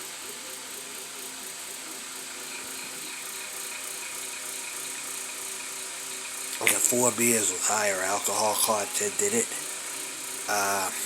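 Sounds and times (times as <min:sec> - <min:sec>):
fast ratchet-like rattling: 0:00.0 - 0:11.0
high hiss: 0:05.1 - 0:11.0.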